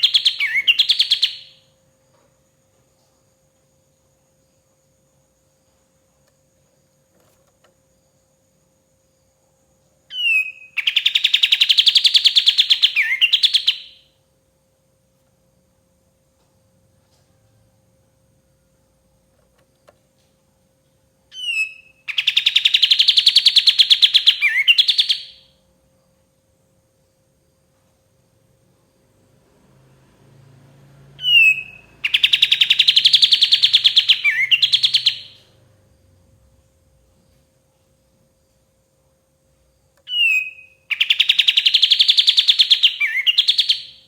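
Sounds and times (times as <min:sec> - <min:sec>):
songbird singing trills: 0:00.0 - 0:01.8, 0:10.1 - 0:14.1, 0:21.3 - 0:25.5, 0:31.1 - 0:35.7, 0:40.0 - 0:44.0
faint steady hum: 0:00.0 - 0:44.0.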